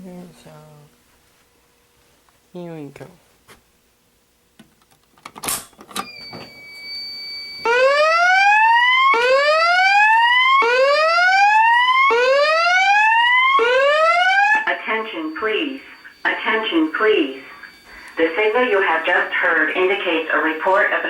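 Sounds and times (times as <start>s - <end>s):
steady high beep: 14.6s - 20.8s.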